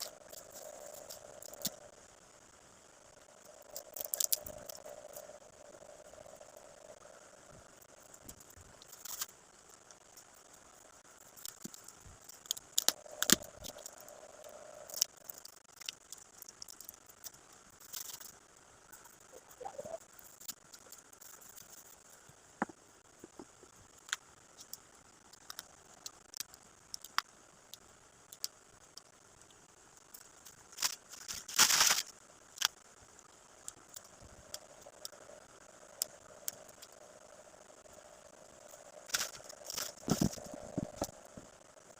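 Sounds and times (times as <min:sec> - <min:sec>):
packaging crinkling and rustling: 0:30.7 - 0:32.1.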